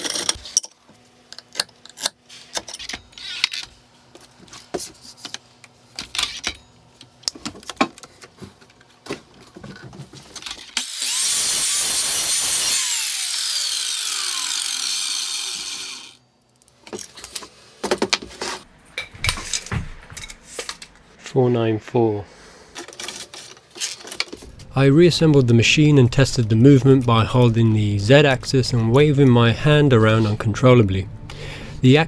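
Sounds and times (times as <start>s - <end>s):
power saw cutting aluminium: 10.7s - 16.2s
saw motor winding down: 10.8s - 16.2s.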